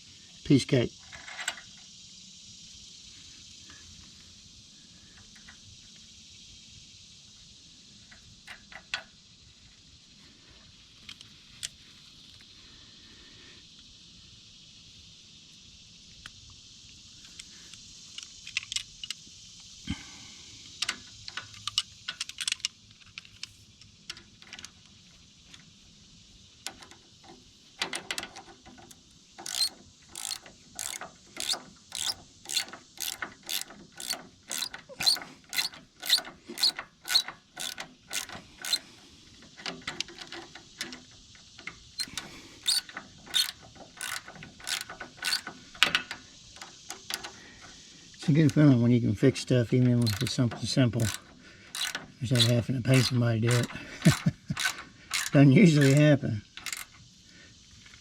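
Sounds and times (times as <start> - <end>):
socket ratchet clicking: 20.8 - 24.8, 27.8 - 47.4, 49.8 - 57.0.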